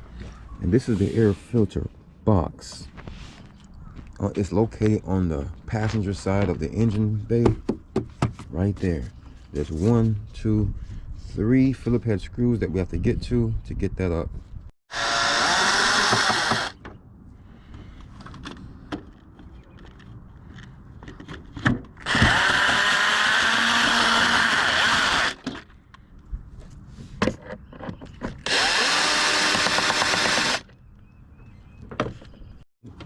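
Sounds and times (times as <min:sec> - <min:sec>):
power drill driving screws: 0:14.9 - 0:16.8, 0:22.0 - 0:25.6, 0:28.4 - 0:30.7.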